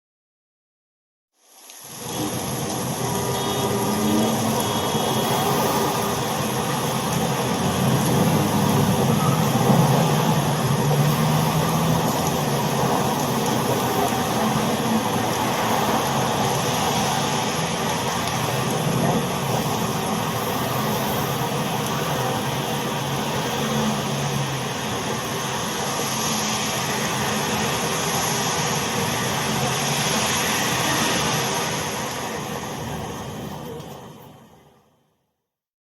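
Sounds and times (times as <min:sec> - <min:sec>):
tyres hissing on wet road: 0:01.4 - 0:34.7
car engines humming: 0:02.2 - 0:31.4.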